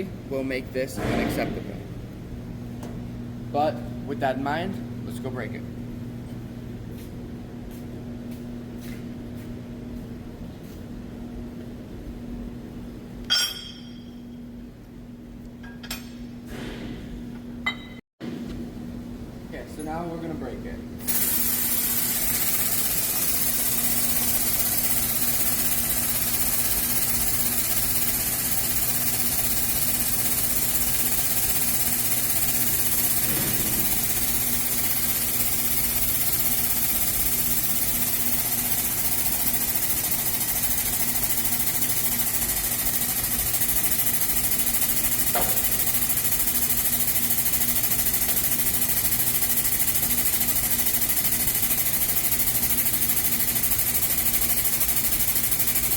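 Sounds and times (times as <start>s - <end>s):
hydraulic press humming: 21.0s - 55.9s.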